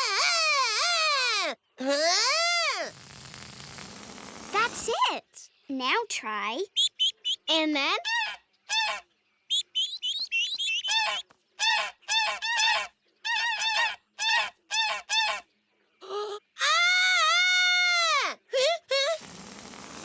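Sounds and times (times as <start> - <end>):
cartoon voice imitating goose: 0.0 - 3.0, 4.5 - 5.4.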